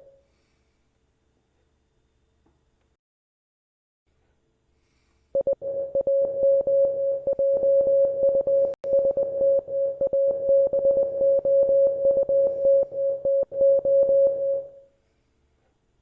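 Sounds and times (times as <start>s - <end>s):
morse code tone: 5.4s - 14.8s.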